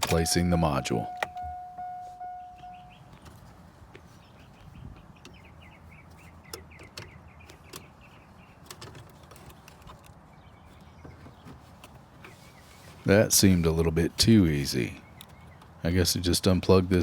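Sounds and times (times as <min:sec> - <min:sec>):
small birds chirping: 0:00.2 - 0:16.6.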